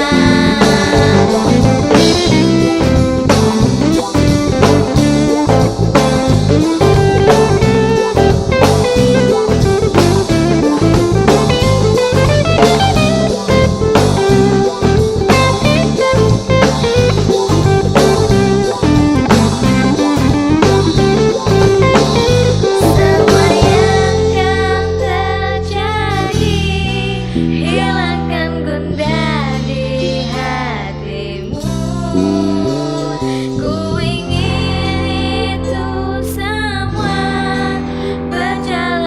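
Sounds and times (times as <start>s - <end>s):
drum kit beat: 0.0s - 25.8s
guitar melody: 0.0s - 36.8s.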